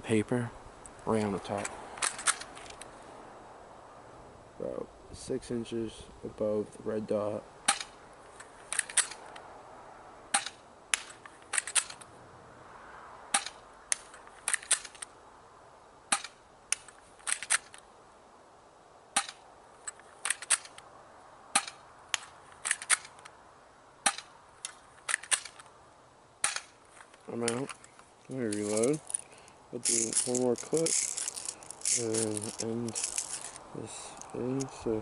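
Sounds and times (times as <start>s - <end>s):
quick clicks: 7.7s - 9.5s, 10.3s - 12.1s, 19.2s - 20.8s, 24.0s - 25.7s.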